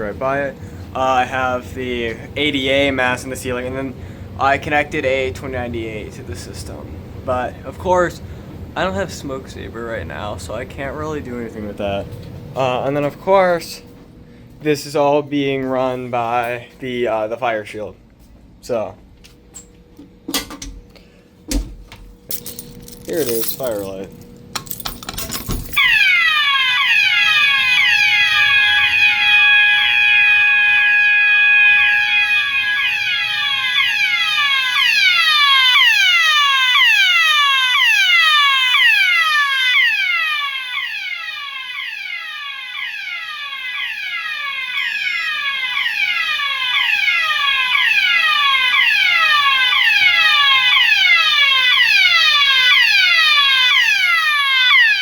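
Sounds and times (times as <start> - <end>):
steady alarm tones: 0.0 - 55.0
fire alarm falling sweep tone: 25.3 - 55.0.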